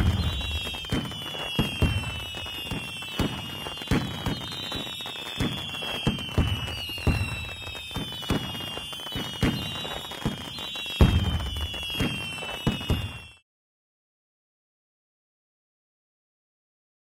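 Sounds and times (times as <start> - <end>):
firework bangs and pops: 0.0 - 13.4
firework whistles sliding down: 0.0 - 13.4.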